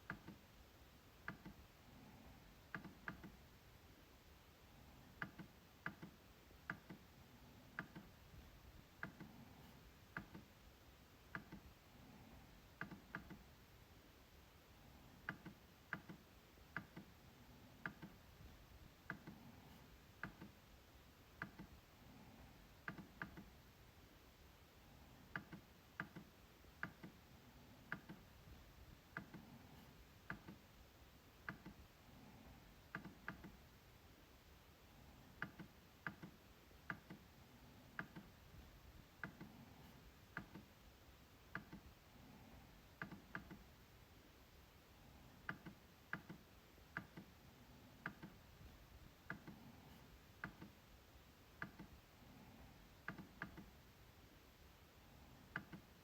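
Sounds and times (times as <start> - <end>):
trackpad clicks: 5.2 - 7.0, 7.8 - 8.2, 12.8 - 13.5, 15.2 - 17.1, 17.8 - 18.2, 20.2 - 20.6, 27.9 - 28.3, 30.2 - 30.6, 32.9 - 33.6, 35.4 - 37.2, 38.0 - 38.4, 41.5 - 41.9, 43.0 - 43.6, 45.4 - 47.3, 53.0 - 53.7.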